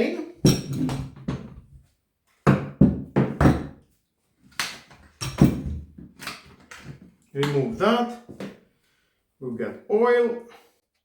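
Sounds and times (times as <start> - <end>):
tool knocks and clunks: 0.4 - 1.8, 2.4 - 3.8, 4.6 - 7.6.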